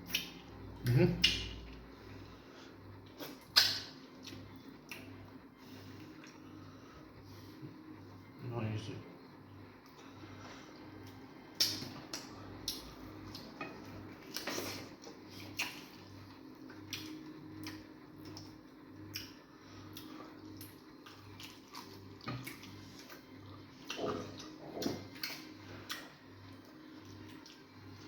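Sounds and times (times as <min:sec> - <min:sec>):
wet chewing squishes: 0:10.9 - 0:28.0.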